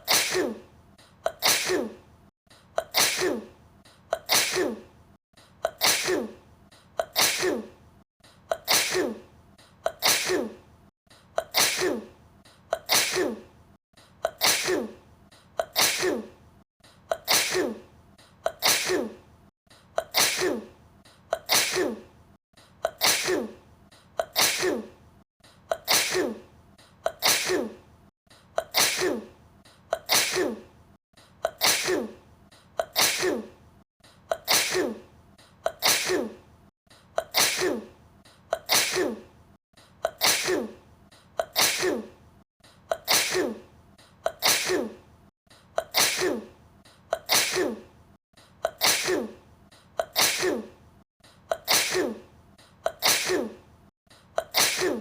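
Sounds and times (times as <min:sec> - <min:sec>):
woman sneezing: 0:00.0 - 0:02.1, 0:02.8 - 0:04.9, 0:05.6 - 0:06.4, 0:07.0 - 0:07.8, 0:08.5 - 0:10.7, 0:11.4 - 0:13.5, 0:14.2 - 0:15.0, 0:15.6 - 0:16.4, 0:17.1 - 0:19.2, 0:20.0 - 0:22.1, 0:22.8 - 0:23.6, 0:24.2 - 0:25.0, 0:25.7 - 0:27.8, 0:28.6 - 0:30.7, 0:31.4 - 0:32.2, 0:32.8 - 0:33.6, 0:34.3 - 0:36.5, 0:37.2 - 0:39.3, 0:40.0 - 0:40.8, 0:41.4 - 0:42.2, 0:42.9 - 0:45.1, 0:45.8 - 0:47.9, 0:48.6 - 0:49.4, 0:50.0 - 0:50.8, 0:51.5 - 0:53.6, 0:54.4 - 0:55.0.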